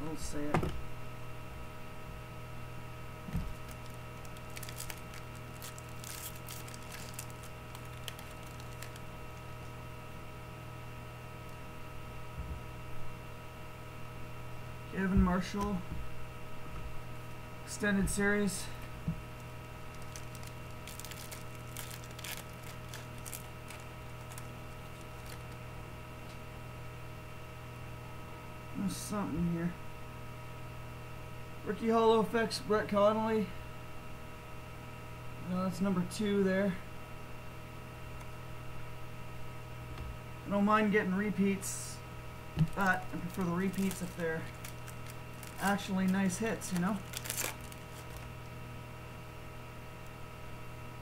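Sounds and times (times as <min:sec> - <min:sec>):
electrical hum: 0:00.0 - 0:51.0
trading cards flipped through: 0:03.4 - 0:09.1, 0:42.6 - 0:45.8
trading cards rustling and clicking: 0:03.4 - 0:09.6, 0:19.4 - 0:25.6, 0:42.6 - 0:48.3.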